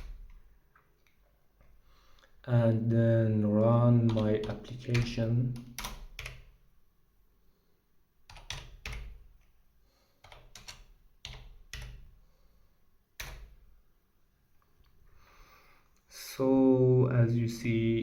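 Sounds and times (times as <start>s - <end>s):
computer keyboard keys clicking: 3.6s - 6.5s, 8.3s - 9.2s, 10.2s - 12.0s, 13.2s - 13.6s.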